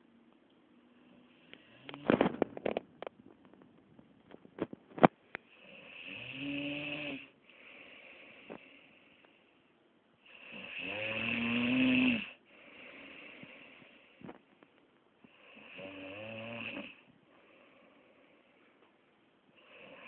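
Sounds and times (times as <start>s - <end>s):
person snoring: 5.5s - 8.6s, 10.3s - 14.0s, 15.3s - 17.1s
soft breath: 7.3s - 9.8s, 12.3s - 14.6s, 17.0s - 20.0s.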